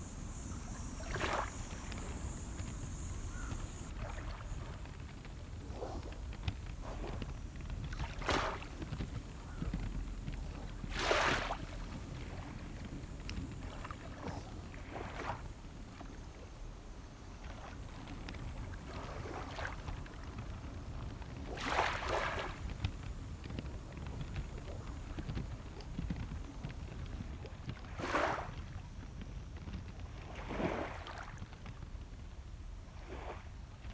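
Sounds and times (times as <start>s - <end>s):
small waves washing in: 0.0s - 16.3s, 17.7s - 26.5s
wind rumble on microphone: 0.0s - 33.9s.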